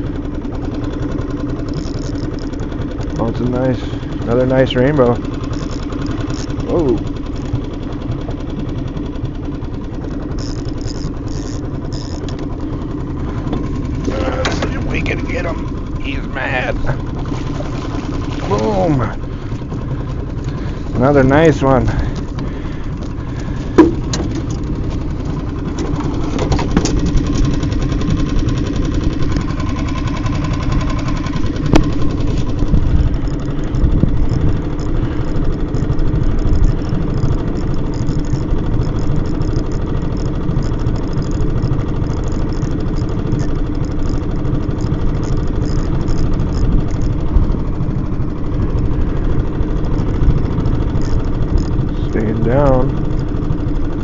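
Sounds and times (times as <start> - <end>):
outboard motor running: 0.0 - 54.0
sharp clicks: 1.6 - 3.3, 4.3 - 7.7, 10.0 - 12.7, 30.7 - 47.5, 49.8 - 53.4.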